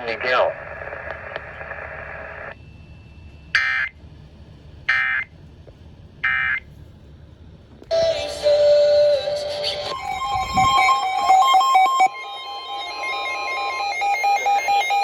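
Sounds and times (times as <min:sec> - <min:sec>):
digital data tones: 0:07.9 - 0:15.0
music: 0:07.9 - 0:15.0.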